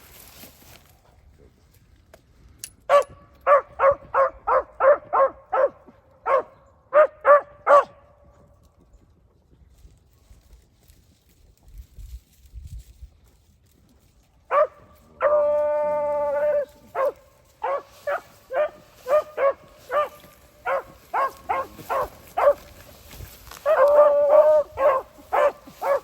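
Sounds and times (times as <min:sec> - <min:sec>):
hounds barking and baying: 0:02.9 - 0:08.0, 0:14.5 - 0:26.0.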